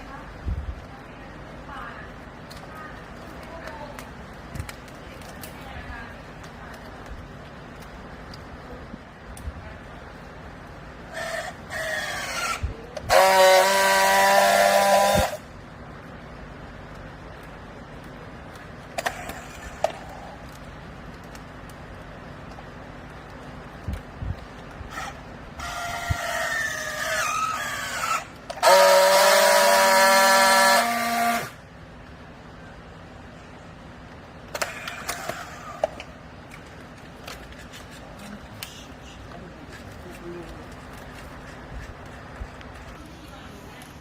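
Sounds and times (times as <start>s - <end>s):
baler machine whine: 24.9s - 31.6s.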